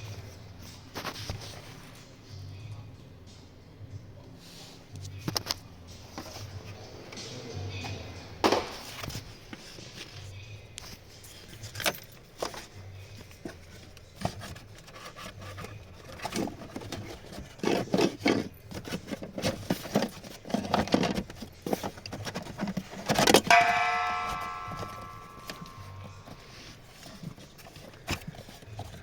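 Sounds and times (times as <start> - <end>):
hands handling tools and parts: 8.6 - 29.0
sharp ringing metallic knock: 23.5 - 26.4.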